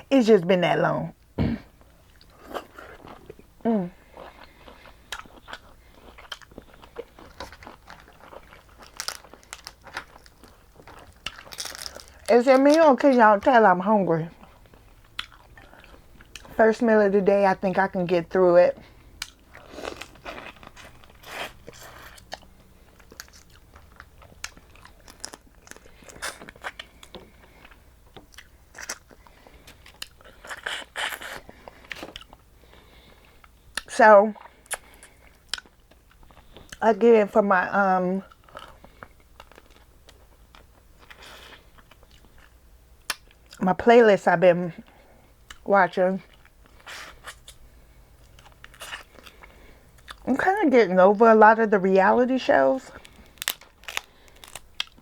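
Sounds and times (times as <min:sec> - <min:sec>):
chewing crab: 0:04.0 - 0:13.0, 0:14.3 - 0:16.6, 0:18.8 - 0:36.8, 0:46.3 - 0:50.3, 0:52.9 - 0:55.0
crab shell crunching and cracking: 0:04.4 - 0:13.5, 0:15.0 - 0:16.5, 0:19.1 - 0:32.5, 0:48.2 - 0:50.2, 0:52.9 - 0:55.0
crab shells cracking: 0:08.7 - 0:12.8, 0:53.0 - 0:55.0.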